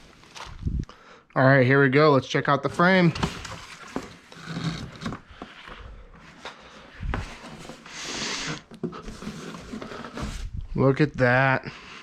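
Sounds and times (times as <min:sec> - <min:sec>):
packaging rustling and crinkling: 0:00.0 - 0:00.7, 0:03.0 - 0:10.7.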